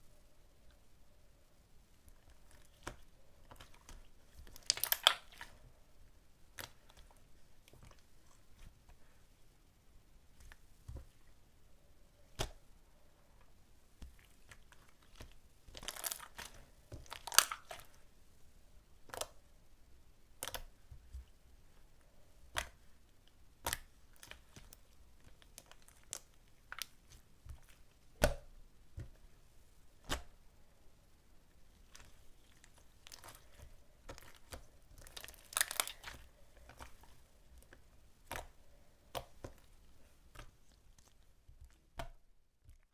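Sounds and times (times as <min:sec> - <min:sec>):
slime crackling: 0:02.1 - 0:05.6, 0:14.0 - 0:18.0, 0:23.6 - 0:29.2, 0:31.7 - 0:42.9
slime popping and clicking: 0:03.6 - 0:05.5.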